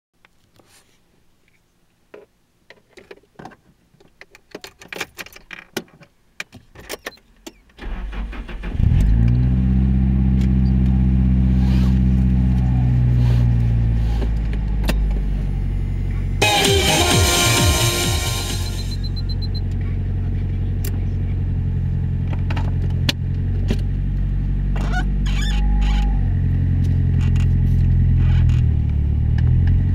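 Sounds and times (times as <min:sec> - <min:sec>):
car engine idling: 0:08.2 - 0:25.3
loud noisy sound: 0:16.4 - 0:19.2.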